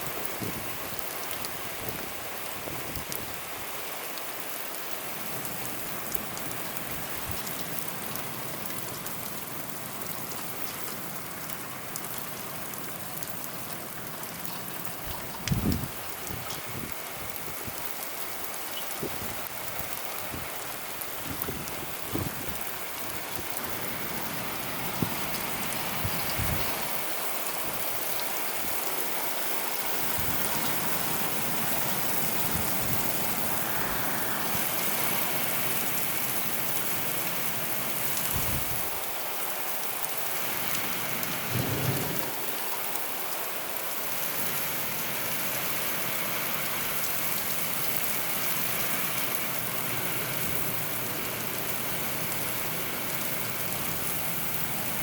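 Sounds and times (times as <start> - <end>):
heavy rain: 0.0 - 55.0
low thumps or rumbles: 41.5 - 42.4.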